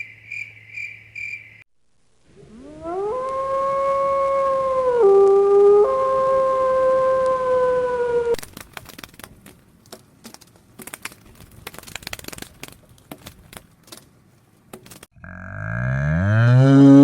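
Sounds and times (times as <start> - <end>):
dog howling: 2.5 - 8.4
faint clicks and crackles: 8.4 - 15.1.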